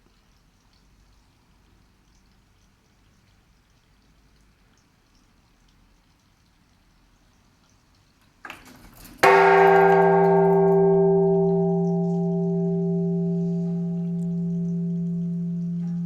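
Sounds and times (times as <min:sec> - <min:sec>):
large temple bell ringing: 0:09.2 - 0:16.0.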